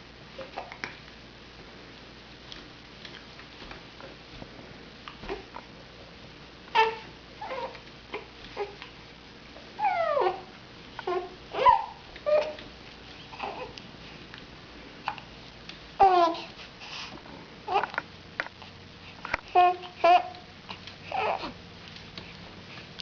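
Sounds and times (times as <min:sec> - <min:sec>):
infant cooing and squealing: 0:09.8 - 0:12.6, 0:21.1 - 0:21.5.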